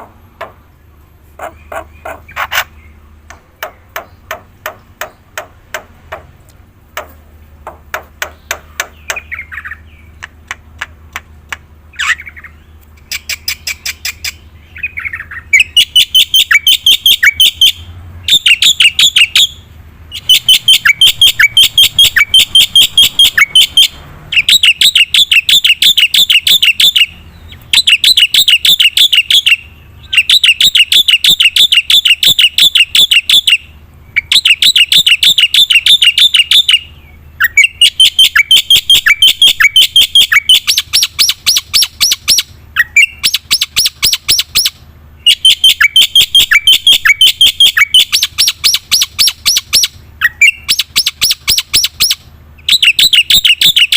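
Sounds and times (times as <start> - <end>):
bird chattering: 0.0 - 53.9
bird clicking: 3.3 - 9.3.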